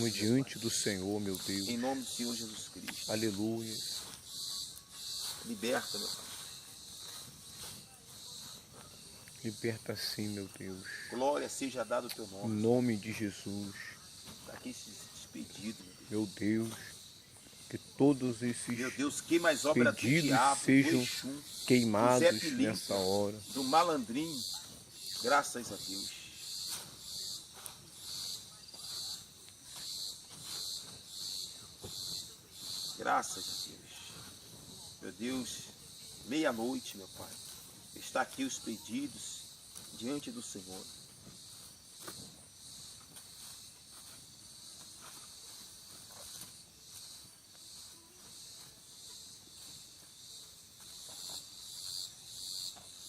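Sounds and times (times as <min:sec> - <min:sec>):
bonfire crackling: 0:00.0 - 0:33.2
crickets chirping: 0:00.0 - 0:53.0.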